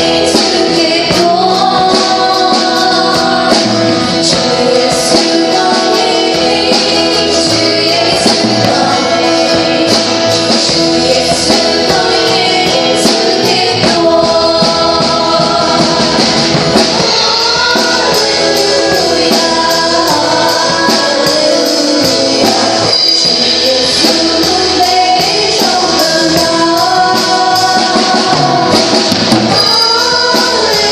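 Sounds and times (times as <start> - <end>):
group of voices singing: 0.0 - 30.9
live band playing: 0.0 - 30.9.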